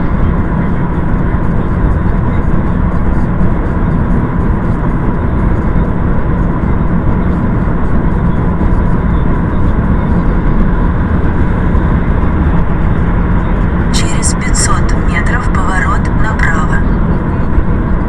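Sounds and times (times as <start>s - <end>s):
vehicle driving rumble: 0.0s - 18.0s.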